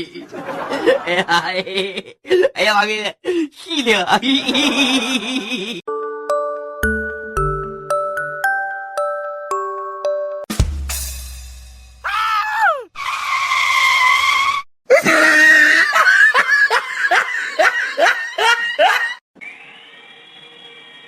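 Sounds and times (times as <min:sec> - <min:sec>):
person screaming and yelping: 0:12.0 - 0:12.9, 0:14.9 - 0:16.1.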